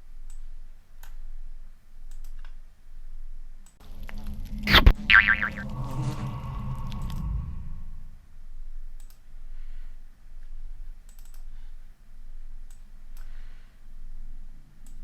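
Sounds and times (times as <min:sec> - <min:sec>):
mouse and keyboard clicks: 0:11.1 - 0:11.5.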